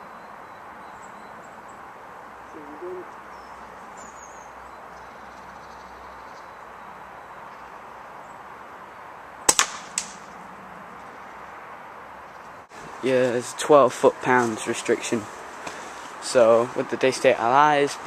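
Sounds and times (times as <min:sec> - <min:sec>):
air rifle shot crack: 0:09.5 - 0:10.4
weaker second crack: 0:09.5 - 0:10.4.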